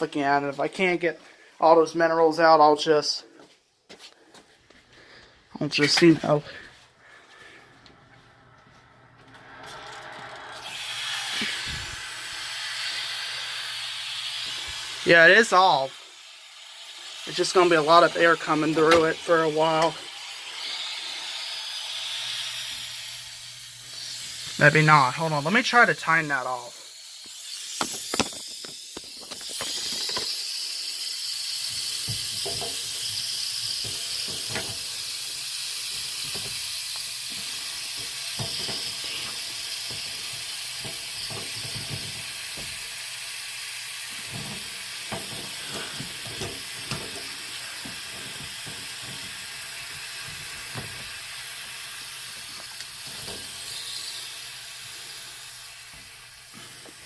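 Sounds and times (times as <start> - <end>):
water and air hissing from valve: 9.5 - 57.0
valve clicks and knocks: 27.7 - 30.4, 31.7 - 43.2, 44.1 - 54.2.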